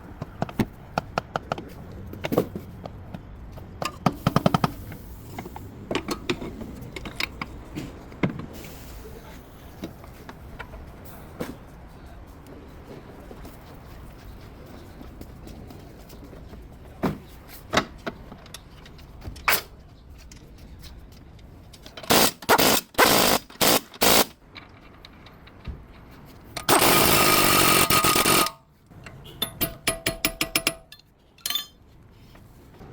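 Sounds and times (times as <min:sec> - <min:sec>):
power tool bursts: 0:22.1 - 0:24.3, 0:26.7 - 0:28.6.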